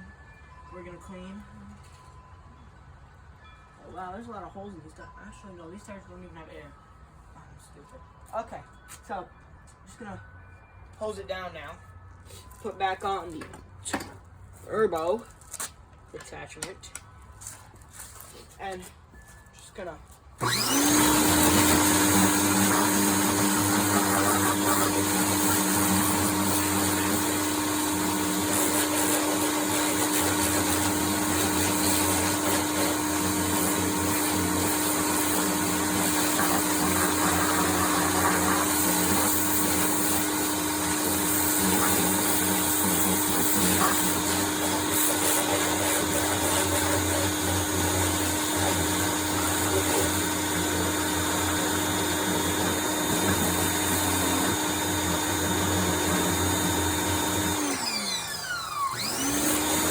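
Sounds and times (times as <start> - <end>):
pressure washer pump humming: 20.4 - 59.9
water spray hissing: 21.3 - 50.3.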